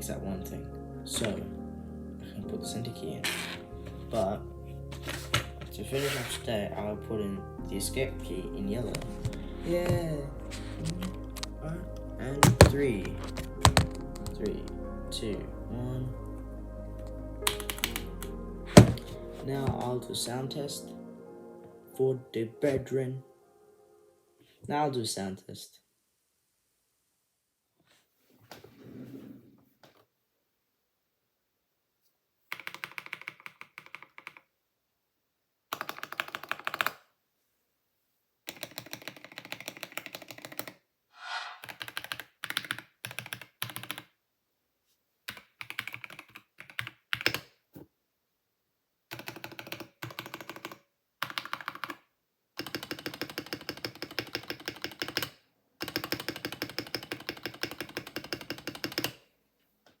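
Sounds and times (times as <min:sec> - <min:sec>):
mechanical keyboard typing: 0:12.4 - 0:14.6, 0:17.5 - 0:19.8, 0:32.5 - 0:34.5, 0:35.7 - 0:37.0, 0:38.5 - 0:40.8, 0:41.6 - 0:44.1, 0:45.3 - 0:47.5, 0:49.1 - 0:52.0, 0:52.6 - 0:59.2.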